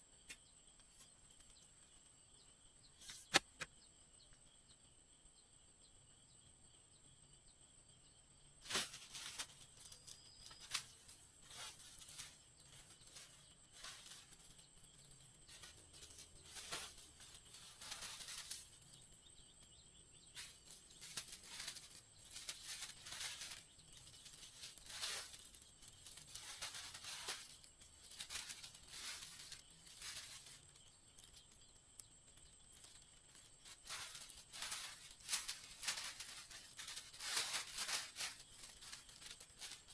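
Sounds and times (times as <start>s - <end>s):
rustling and tearing swishes: 8.6s - 19.0s, 20.3s - 31.3s, 32.7s - 39.9s.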